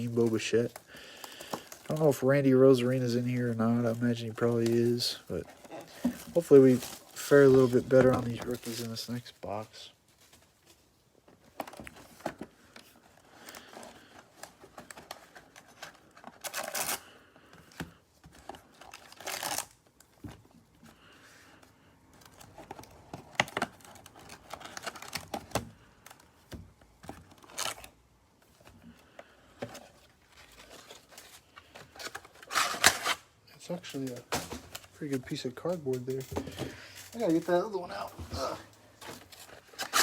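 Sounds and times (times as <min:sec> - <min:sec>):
cardboard and wrapping tearing: 0:13.4 - 0:17.2, 0:18.6 - 0:19.8, 0:27.3 - 0:28.0, 0:30.3 - 0:33.3, 0:34.0 - 0:40.0.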